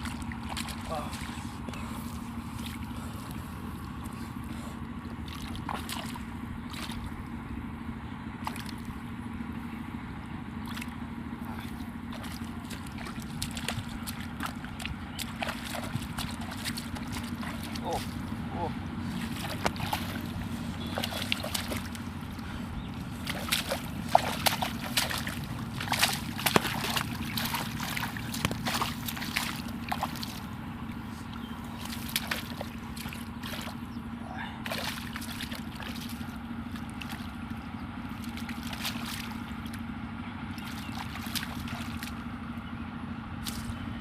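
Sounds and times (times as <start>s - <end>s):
water sloshing and splashing: 0.0s - 7.6s, 8.3s - 9.7s, 10.5s - 42.4s
steady low hum: 0.0s - 44.0s.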